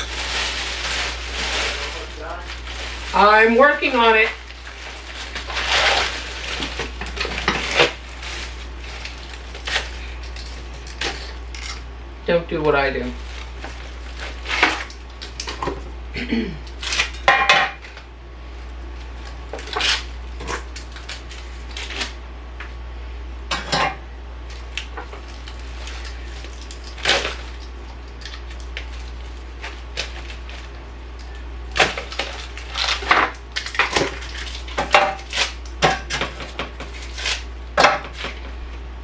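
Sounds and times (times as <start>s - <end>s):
dishes and pans clattering: 17.2s - 17.8s, 23.5s - 24.0s.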